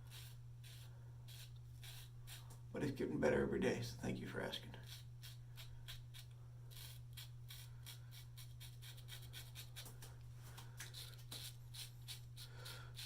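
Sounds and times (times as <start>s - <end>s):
razor scraping stubble: 0.0s - 2.6s, 4.5s - 10.1s, 10.8s - 13.0s.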